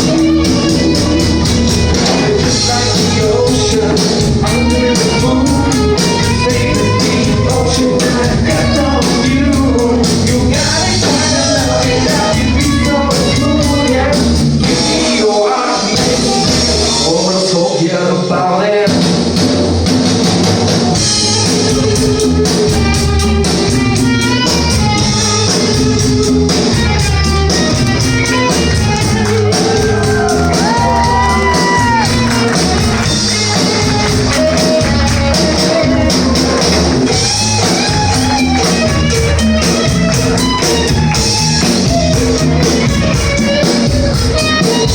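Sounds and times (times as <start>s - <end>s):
drums with steady beat: 0.0s - 17.8s, 18.8s - 44.9s
guitar: 0.0s - 44.9s
person singing or shouting: 29.4s - 32.8s.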